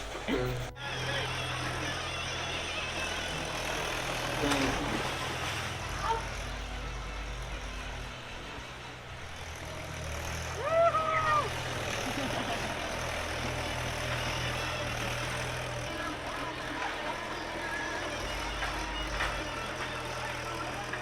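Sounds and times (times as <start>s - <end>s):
motor engine humming: 0.0s - 21.0s
pitched shout-like call: 10.6s - 11.5s.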